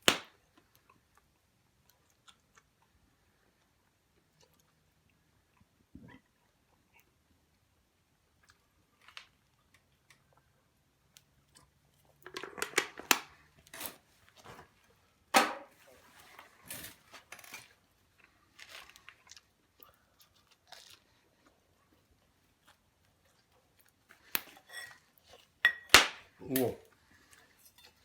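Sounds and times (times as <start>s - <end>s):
crunching and chewing: 0.2s - 15.0s, 17.6s - 25.6s.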